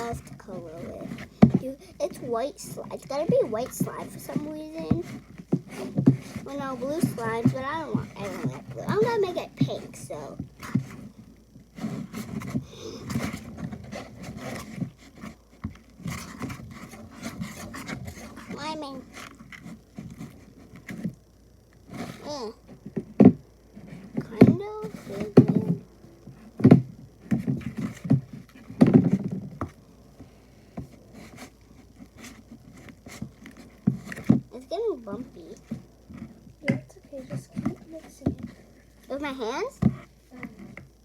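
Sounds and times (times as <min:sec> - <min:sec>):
slime stirred in a bowl: 0:00.0 - 0:21.2.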